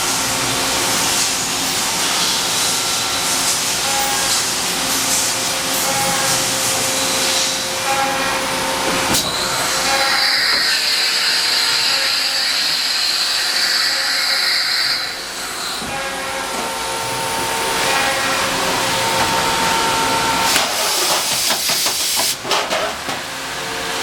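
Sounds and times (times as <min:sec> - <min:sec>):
high machine whine: 0:00.0 - 0:21.1
machining center mechanical hiss: 0:08.6 - 0:22.5.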